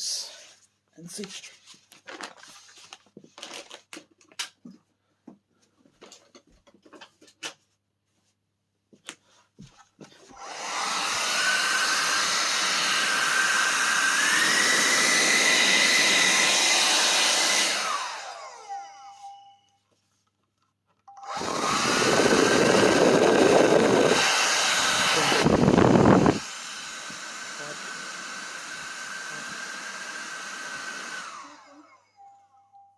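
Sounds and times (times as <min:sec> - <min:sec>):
hair dryer blowing: 0:10.3 - 0:19.2, 0:21.2 - 0:32.2.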